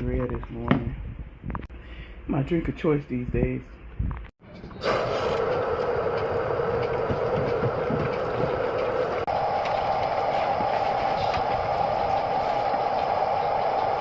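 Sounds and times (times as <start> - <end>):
steady rain falling: 5.2 - 14.0.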